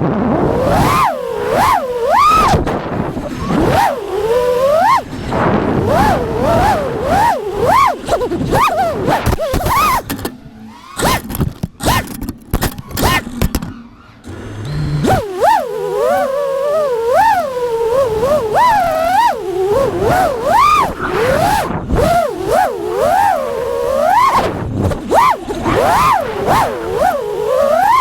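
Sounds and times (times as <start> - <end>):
quadcopter motors whining: 0.0 - 28.0
clicks and knocks: 11.0 - 13.8.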